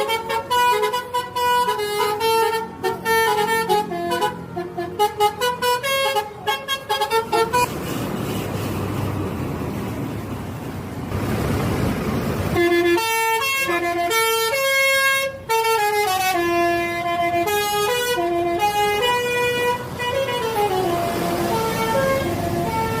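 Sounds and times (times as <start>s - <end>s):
bus horn playing a melody: 0.0s - 7.7s, 12.5s - 23.0s
vehicle noise: 0.0s - 23.0s.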